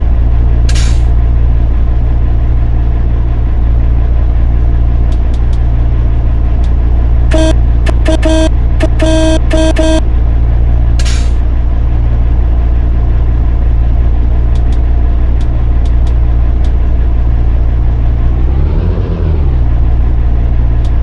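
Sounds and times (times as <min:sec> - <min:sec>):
horn toot: 0:07.3 - 0:10.0.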